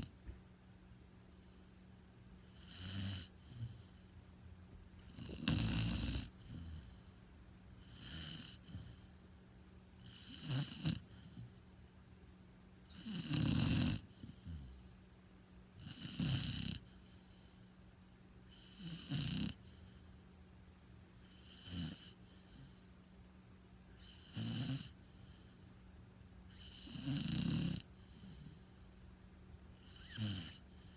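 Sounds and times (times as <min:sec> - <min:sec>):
dog snoring: 0:02.3 - 0:04.1, 0:05.0 - 0:07.2, 0:07.8 - 0:09.2, 0:10.0 - 0:11.6, 0:12.8 - 0:15.0, 0:15.8 - 0:17.6, 0:18.5 - 0:20.1, 0:21.2 - 0:22.9, 0:23.9 - 0:25.6, 0:26.5 - 0:28.8, 0:29.7 - 0:30.9.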